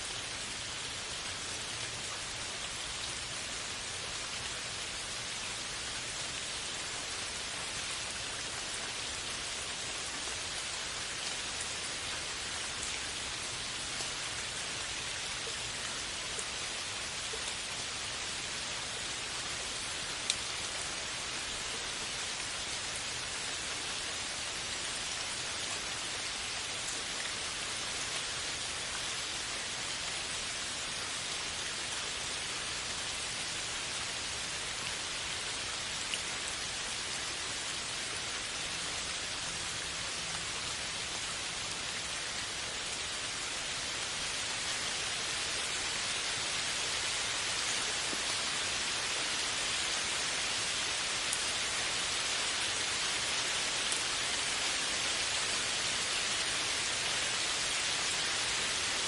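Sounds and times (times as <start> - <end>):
steady rain hiss: 0.0 - 59.0
faint raindrop ticks: 18.8 - 23.2.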